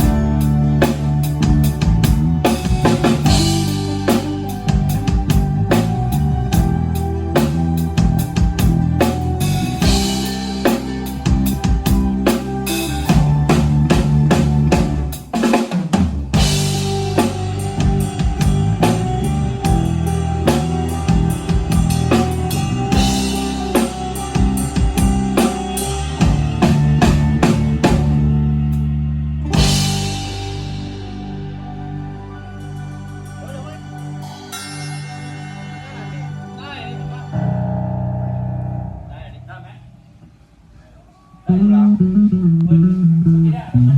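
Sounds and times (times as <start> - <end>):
live band playing: 0.0 - 40.3
ringing crash cymbal: 34.2 - 36.6.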